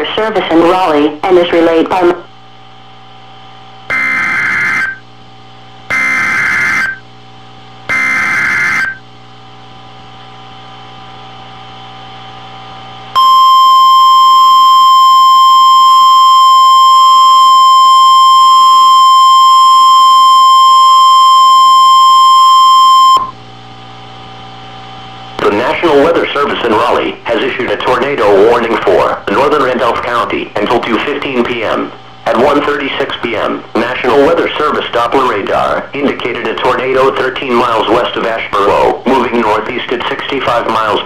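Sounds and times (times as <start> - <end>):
screechy two-tone data bursts: 3.9 - 5.0, 5.9 - 7.0, 7.9 - 9.0
single-pitch warning alarm tone: 3.9 - 5.1, 5.9 - 7.1, 7.9 - 9.1, 13.1 - 23.4.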